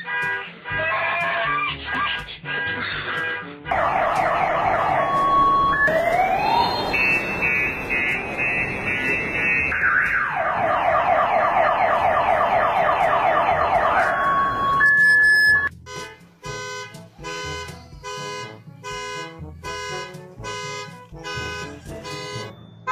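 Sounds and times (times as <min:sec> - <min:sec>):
car alarm siren: 0:03.7 - 0:15.7.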